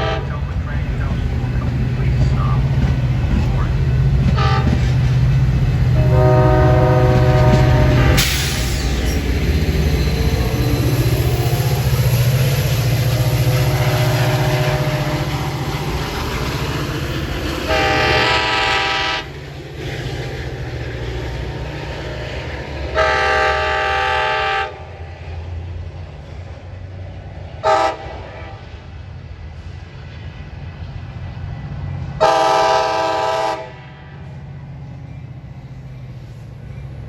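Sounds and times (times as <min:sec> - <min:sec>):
train air horn blasts: 0:00.0 - 0:00.6, 0:04.4 - 0:04.9, 0:05.9 - 0:09.1, 0:13.2 - 0:15.5, 0:17.7 - 0:19.4, 0:22.9 - 0:24.9, 0:27.6 - 0:28.6, 0:32.2 - 0:33.8
train rumbling on rails: 0:00.0 - 0:37.0.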